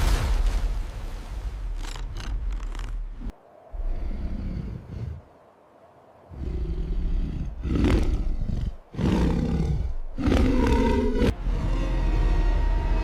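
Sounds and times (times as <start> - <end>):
monster roaring: 6.3 - 13.0.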